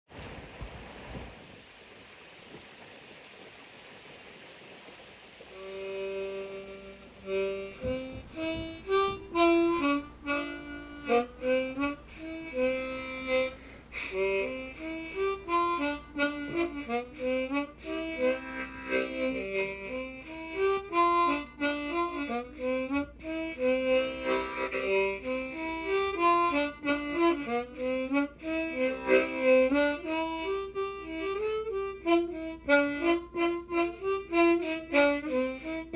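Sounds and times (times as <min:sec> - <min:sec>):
stream rushing: 0:00.1 - 0:11.4
harmonica playing dance tune: 0:05.6 - 0:35.9.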